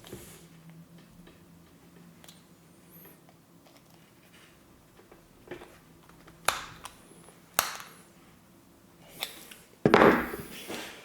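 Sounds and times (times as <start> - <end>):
plug parts clicking: 7.6 - 7.9.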